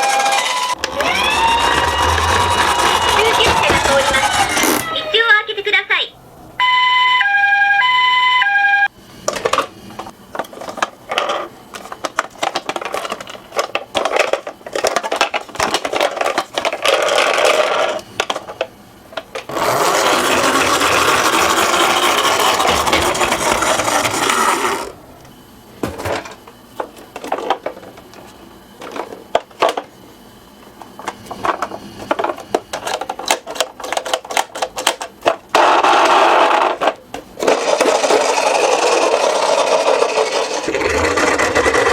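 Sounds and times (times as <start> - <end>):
toy cars wheels rattling: 0.0 - 4.9, 19.4 - 24.9, 37.4 - 41.9
continuous rolling rasp: 0.0 - 5.0, 19.5 - 25.0, 37.4 - 41.9.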